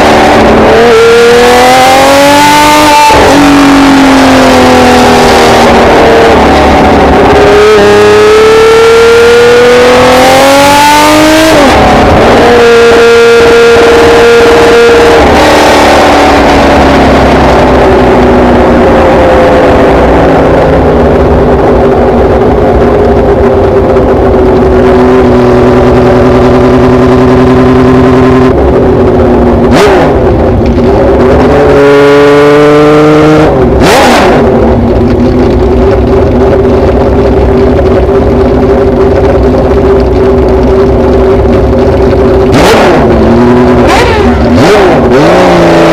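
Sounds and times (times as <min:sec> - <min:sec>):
motorcycle engine running: 0:00.0 - 0:45.9.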